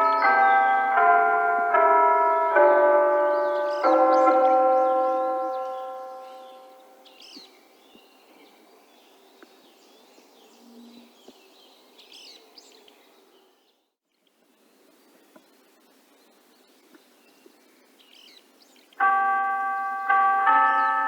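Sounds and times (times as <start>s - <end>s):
small birds chirping: 0.0s - 1.2s, 3.1s - 21.0s
chime ringing: 0.0s - 7.0s, 19.0s - 21.0s
faint rain hiss: 14.1s - 20.2s.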